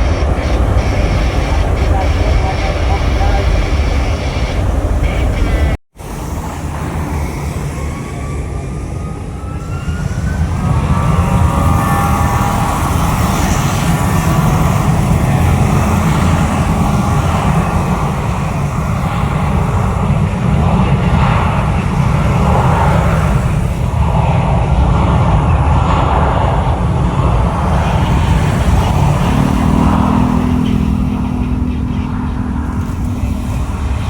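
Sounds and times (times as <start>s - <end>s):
low hum with overtones: 0.0s - 5.8s
jet engines rumbling: 0.0s - 34.0s.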